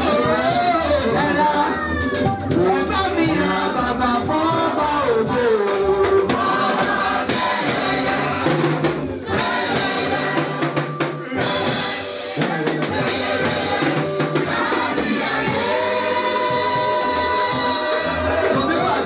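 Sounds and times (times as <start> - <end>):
drum kit steady beat: 0.0 - 19.0
choir singing: 5.6 - 19.0.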